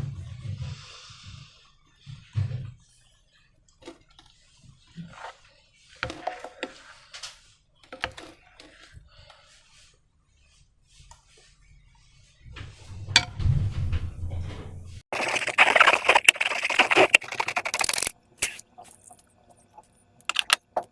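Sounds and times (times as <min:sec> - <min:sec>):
soft low thumps: 0:12.4 - 0:15.0
sticky clicks and crackling: 0:15.1 - 0:20.8.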